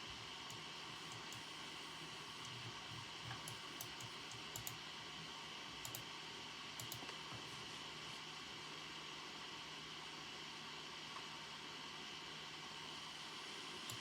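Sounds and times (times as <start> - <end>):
keyboard keys clicking: 6.8 - 7.1.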